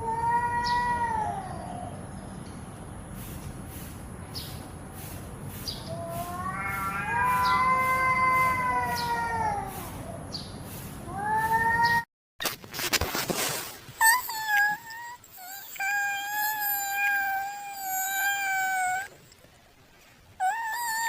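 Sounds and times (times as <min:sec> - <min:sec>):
cat meowing: 0:06.0 - 0:09.8, 0:14.0 - 0:19.2, 0:20.4 - 0:21.0.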